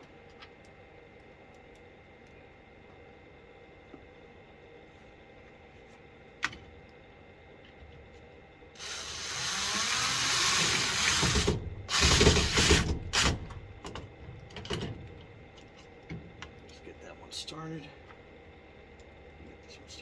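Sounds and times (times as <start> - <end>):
cordless drill into wood: 8.8 - 13.5.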